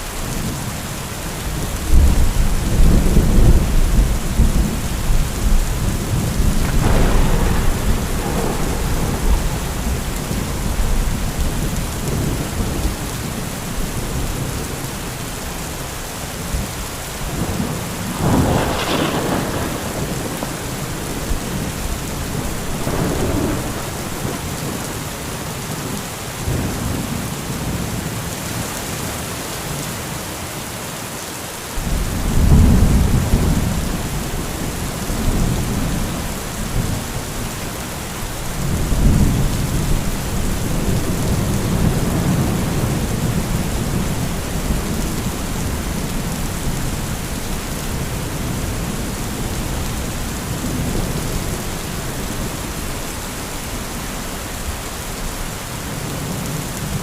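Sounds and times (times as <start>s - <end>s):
heavy rain falling: 0.0s - 57.0s
rolling thunder: 1.4s - 14.8s, 16.5s - 25.1s, 31.8s - 54.0s.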